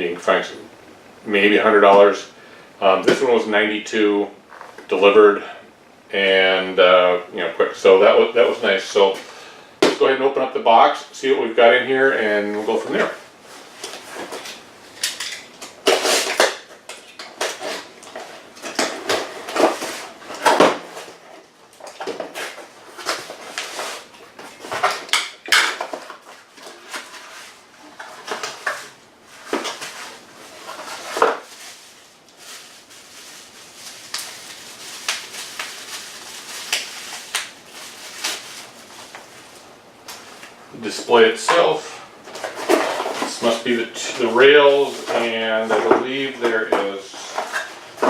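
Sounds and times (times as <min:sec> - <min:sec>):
cardboard box being unpacked: 0:15.8 - 0:39.5.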